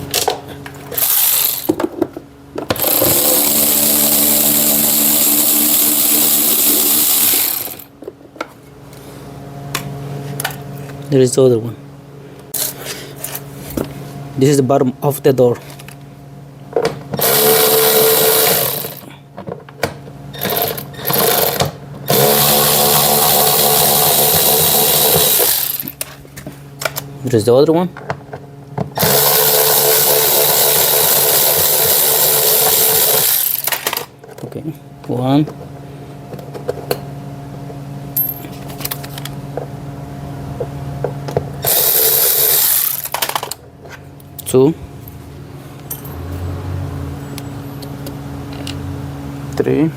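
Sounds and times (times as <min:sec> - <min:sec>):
steady low hum: 0:00.0 - 0:29.2, 0:29.8 - 0:49.9
cordless drill motor running: 0:00.9 - 0:01.7, 0:02.8 - 0:07.9, 0:17.2 - 0:19.1, 0:20.4 - 0:26.0, 0:29.0 - 0:33.7, 0:41.6 - 0:43.1.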